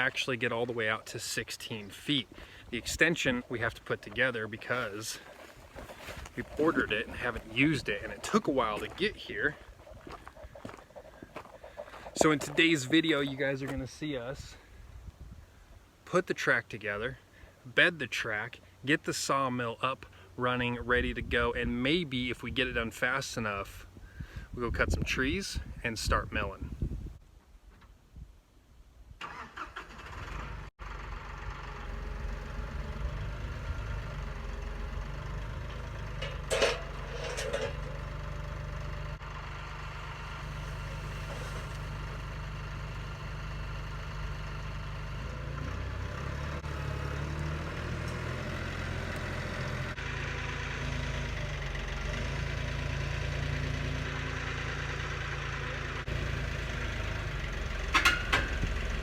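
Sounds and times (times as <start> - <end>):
tractor engine running: 0.0 - 14.0, 29.2 - 59.0.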